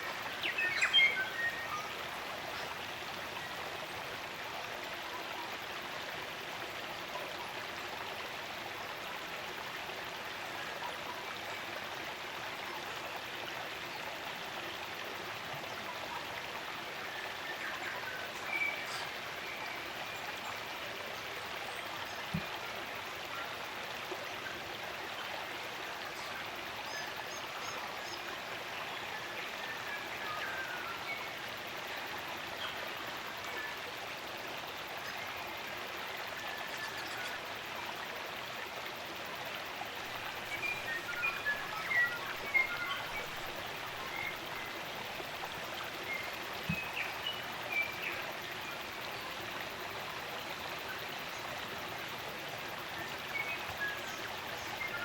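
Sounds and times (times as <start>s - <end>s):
stream running water: 0.0s - 55.0s
faint bird chirps: 40.1s - 49.3s.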